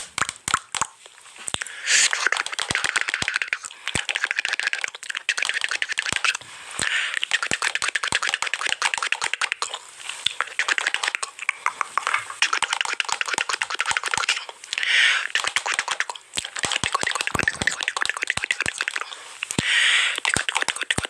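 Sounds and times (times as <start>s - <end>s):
sharp cracks: 0.0s - 14.4s
dense rapid crackling: 1.9s - 9.7s.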